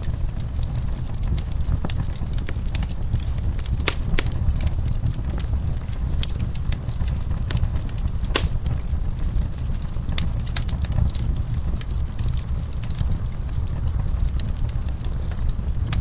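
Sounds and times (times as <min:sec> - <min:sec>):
wood fire crackling and popping: 0:03.8 - 0:04.6, 0:08.4 - 0:08.7.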